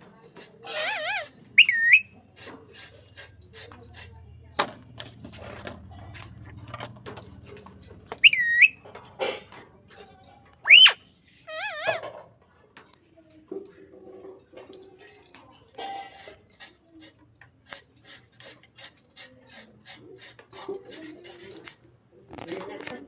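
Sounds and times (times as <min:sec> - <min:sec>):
parrot whistled chirps: 0:00.8 - 0:02.2, 0:08.2 - 0:08.8, 0:10.6 - 0:12.0.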